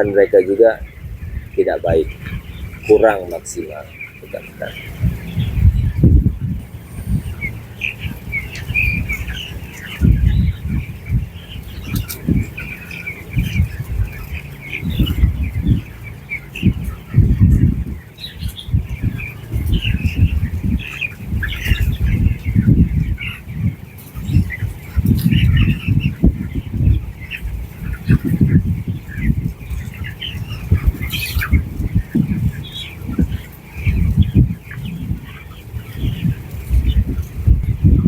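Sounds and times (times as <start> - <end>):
low rumbles: 0.0 - 16.0
chickens chirping and peeping: 0.0 - 38.0.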